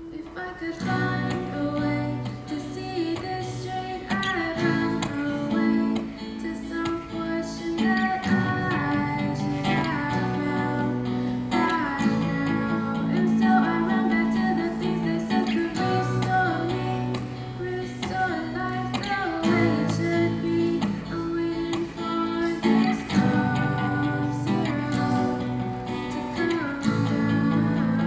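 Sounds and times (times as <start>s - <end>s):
guitar strumming chords: 0.0s - 28.0s
person singing: 0.0s - 28.0s.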